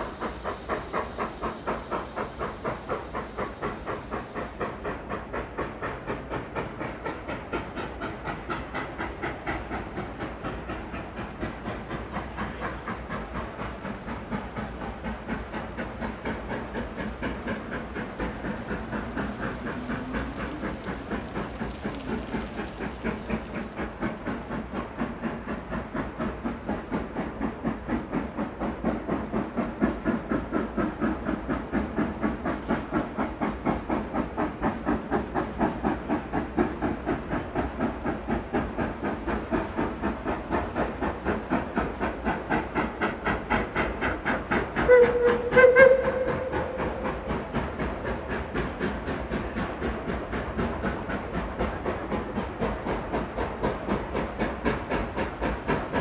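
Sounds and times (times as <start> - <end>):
steam hissing: 0.0 - 56.0
steam locomotive chuffing: 0.0 - 56.0
steam whistle blasts: 44.8 - 47.0.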